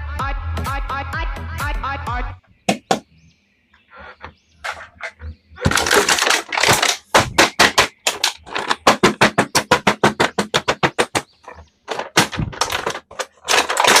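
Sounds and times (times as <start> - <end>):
crinkling handling noises: 4.0 - 14.0.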